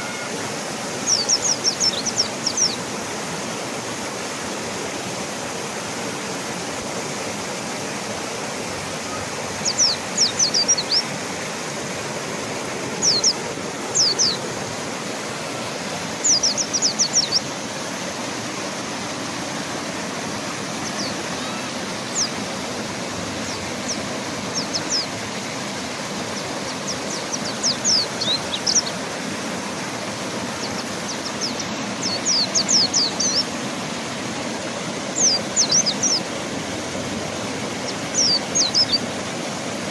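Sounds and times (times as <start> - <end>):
river water rushing: 0.0 - 39.9
bird chirping: 9.6 - 11.1, 13.0 - 14.4.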